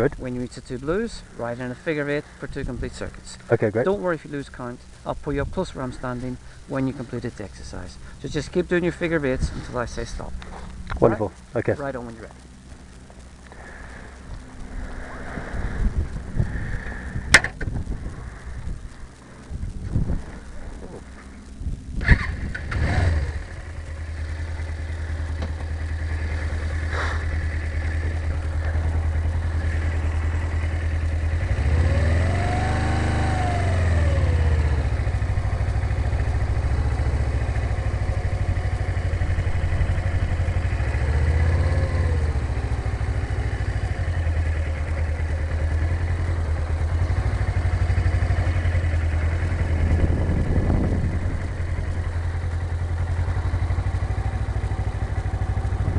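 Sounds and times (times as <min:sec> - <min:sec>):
motorcycle engine revving: 0:05.8 - 0:55.9.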